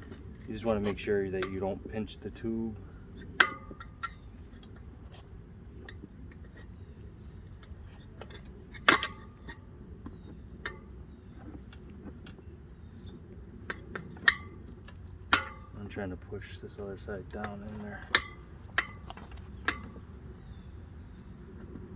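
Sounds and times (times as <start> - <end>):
light metal taps: 0.0 - 1.8, 13.7 - 15.8, 17.3 - 20.1
metal tire spoons clinking on rim: 0.0 - 9.7, 13.6 - 20.1
crickets chirping: 0.0 - 21.9.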